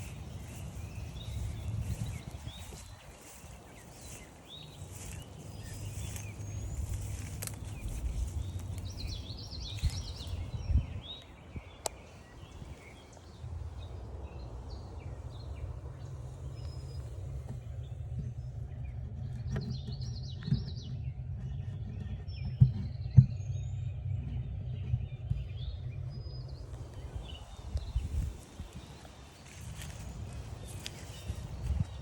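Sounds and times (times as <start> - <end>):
birds singing and chirping: 0.0 - 32.0
low steady rumble: 0.0 - 32.0.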